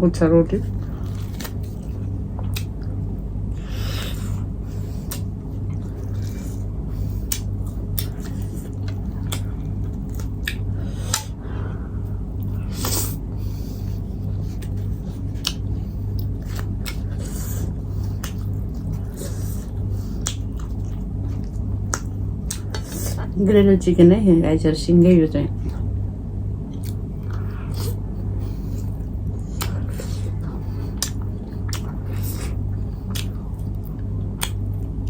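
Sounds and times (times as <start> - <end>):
low pulsing hum: 0.0 - 35.0
mouth clicks and chewing: 0.7 - 2.8, 4.9 - 11.4, 14.4 - 23.3, 26.7 - 34.9.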